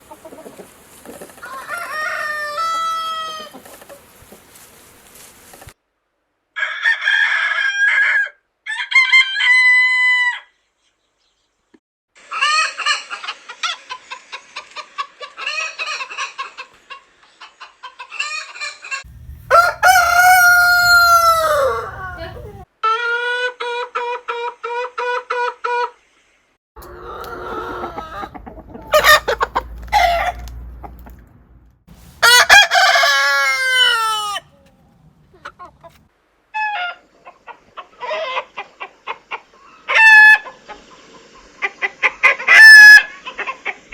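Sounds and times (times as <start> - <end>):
chicken clucks: 0.0 - 4.5, 12.4 - 22.6, 26.8 - 31.2, 33.2 - 43.9
roosters crowing: 1.2 - 4.1, 19.0 - 22.6, 26.8 - 30.5, 32.2 - 34.6.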